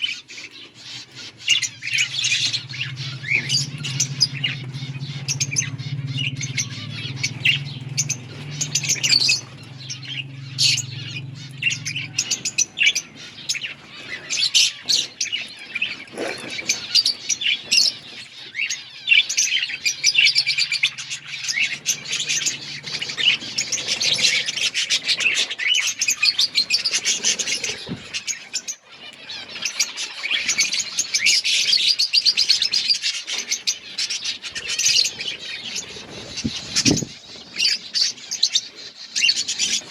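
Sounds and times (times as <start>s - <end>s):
budgerigars chattering: 0.0s - 39.9s
low steady hum: 0.8s - 18.9s.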